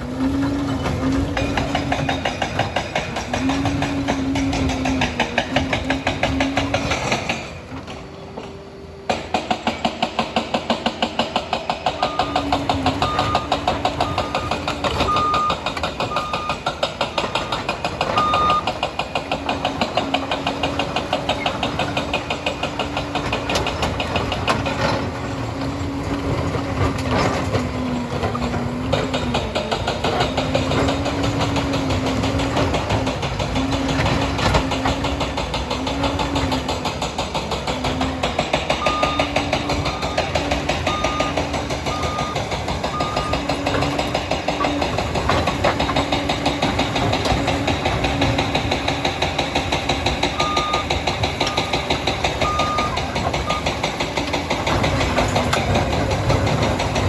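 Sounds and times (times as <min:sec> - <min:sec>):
dozer diesel engine pulsing: 0:00.0 - 0:57.0
reversing alarm beeping: 0:11.9 - 0:18.8, 0:38.6 - 0:43.8, 0:50.3 - 0:53.8.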